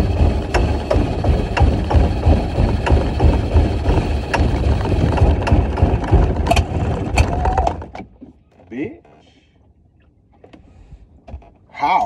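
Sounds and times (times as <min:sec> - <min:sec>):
boat motor idling unevenly: 0:00.0 - 0:08.0.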